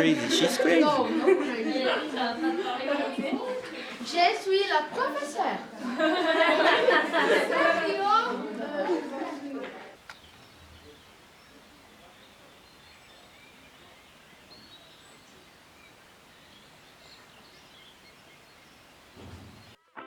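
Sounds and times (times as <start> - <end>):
faint background ambience: 0.0 - 19.8.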